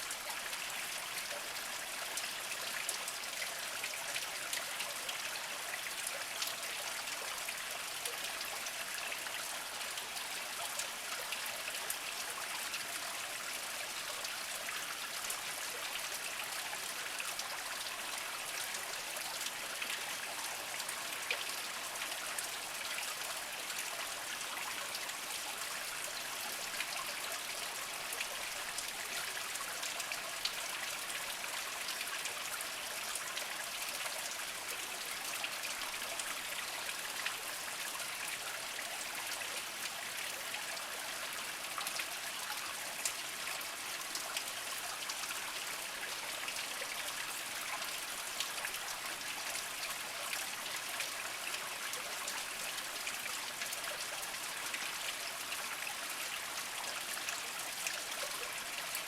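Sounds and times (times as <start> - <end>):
stream trickling over rocks: 0.0 - 59.0.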